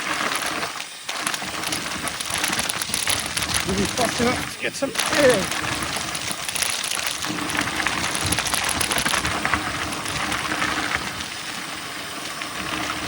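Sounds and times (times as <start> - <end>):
freewheel hub ticking whirr: 0.0 - 13.0
tyres on dirt: 1.3 - 11.1.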